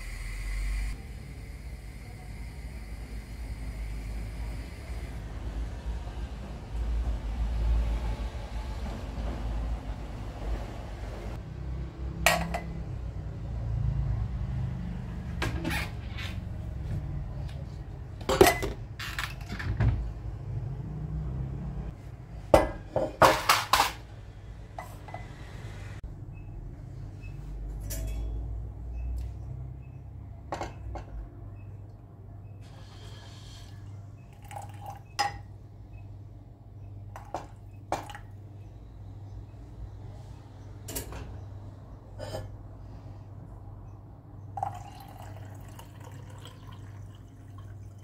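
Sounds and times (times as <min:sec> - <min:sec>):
dishes and cutlery clinking: 0:22.6 - 0:24.0, 0:27.8 - 0:28.4.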